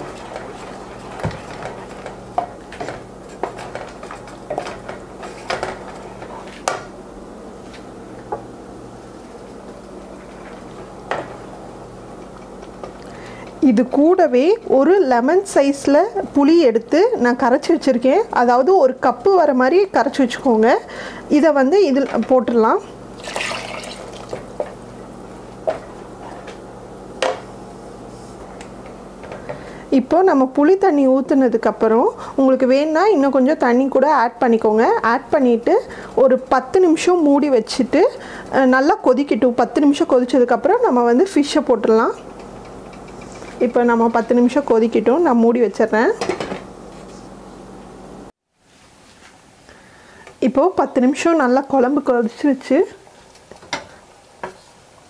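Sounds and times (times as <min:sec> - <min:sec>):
liquid pouring and splashing: 0:23.2 - 0:24.4.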